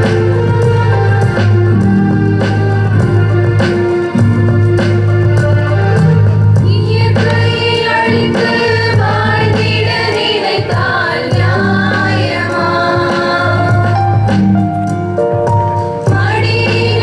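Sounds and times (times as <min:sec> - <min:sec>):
electronic keyboard accompaniment: 0:00.0 - 0:17.0
group of voices singing: 0:05.8 - 0:14.9, 0:15.8 - 0:17.0.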